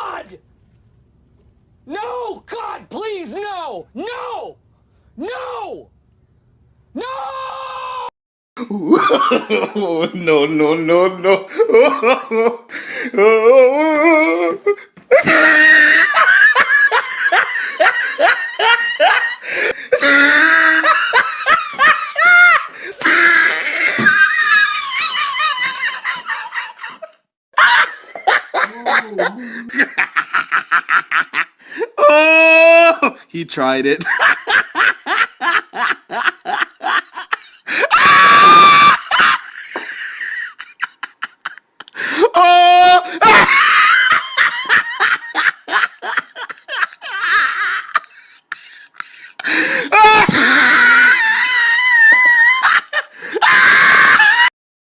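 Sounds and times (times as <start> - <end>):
person screaming: 0.0 - 0.3, 4.0 - 4.6, 5.2 - 5.9, 7.0 - 8.1, 13.2 - 16.3, 19.8 - 21.2, 22.1 - 25.9, 31.9 - 33.2, 37.7 - 39.2, 42.0 - 44.7, 49.6 - 54.5
man laughing hard: 8.6 - 33.2, 34.0 - 54.5.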